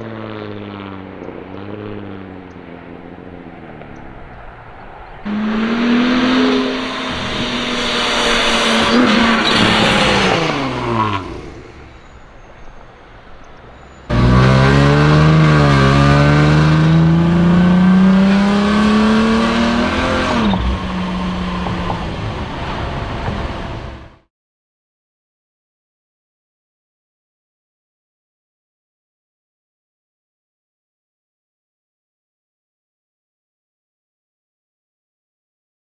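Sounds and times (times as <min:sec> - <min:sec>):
car engine revving hard: 0:05.2 - 0:12.6, 0:13.7 - 0:24.2.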